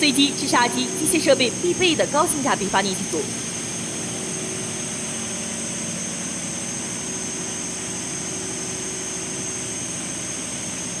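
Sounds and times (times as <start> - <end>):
high-pitched whine: 0.0 - 3.6
diesel generator drone: 0.0 - 11.0.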